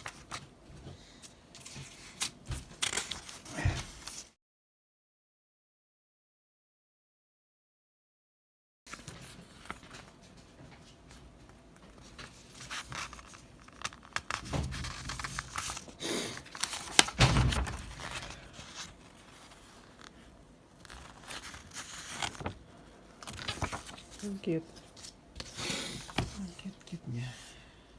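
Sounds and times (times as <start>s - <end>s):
packaging torn and crinkled: 23.2s - 24.3s.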